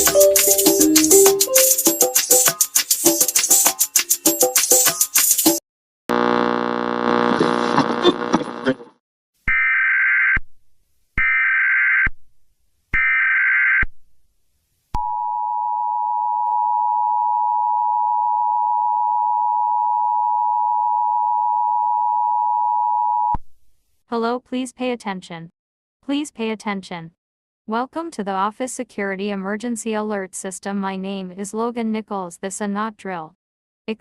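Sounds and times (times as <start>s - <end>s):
harsh buzzing sound: 6.1s - 9.0s.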